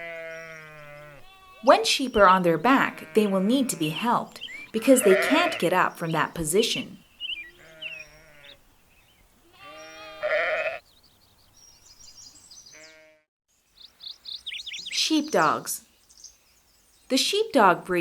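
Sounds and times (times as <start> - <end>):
sheep bleating: 0.0 - 1.7, 4.9 - 5.7, 7.5 - 8.6, 9.4 - 10.8, 12.7 - 13.2
faint bird chirps: 4.3 - 4.8, 7.0 - 10.2, 13.7 - 17.1.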